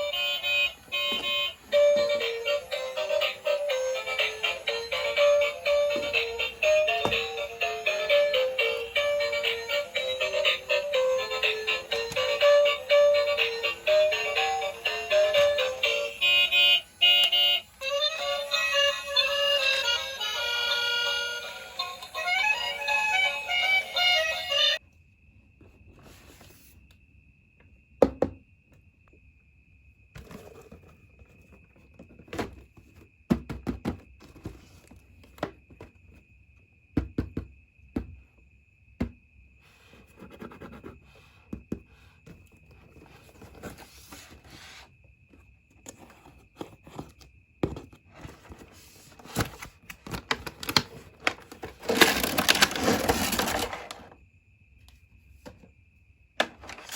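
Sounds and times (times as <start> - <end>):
plastic parts and packaging handled: 30.2 - 33.1, 42.2 - 44.7, 45.8 - 54.2, 56.4 - 56.9.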